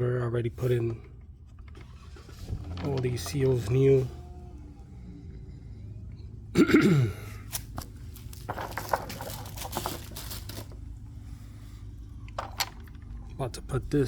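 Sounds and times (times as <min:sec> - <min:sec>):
steady low hum: 0:00.0 - 0:14.0
person coughing: 0:06.5 - 0:07.5
clicks and rustling of handled parts: 0:07.4 - 0:10.8, 0:12.2 - 0:13.4.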